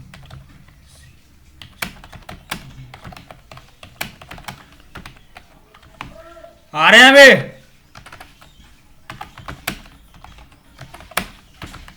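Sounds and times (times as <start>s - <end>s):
keyboard key clicks: 8.0s - 11.9s.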